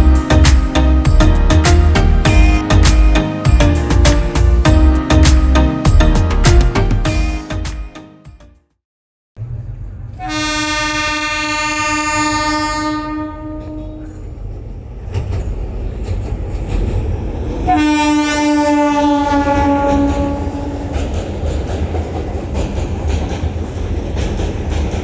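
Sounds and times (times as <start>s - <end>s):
train horn blasts: 10.1s - 14.1s, 17.7s - 20.9s
train wheels clattering: 19.9s - 25.0s.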